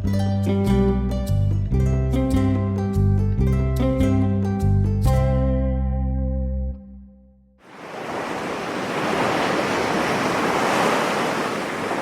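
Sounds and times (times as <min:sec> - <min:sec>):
ocean waves breaking: 0:07.6 - 0:12.0.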